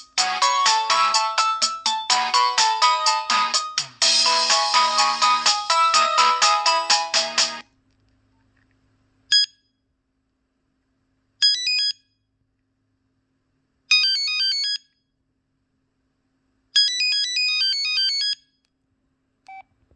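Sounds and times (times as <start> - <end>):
beeping ringtone melody: 0.0 - 7.6.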